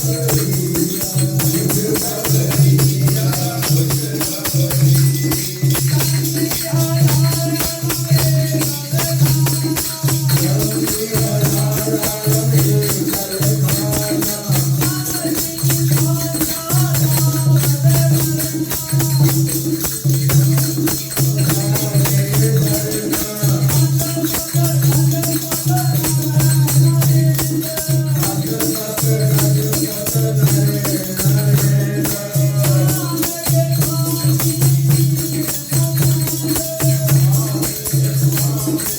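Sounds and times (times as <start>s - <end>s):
devotional hymn singing: 0.0s - 19.6s, 21.1s - 38.9s
jingling percussion: 0.0s - 38.9s.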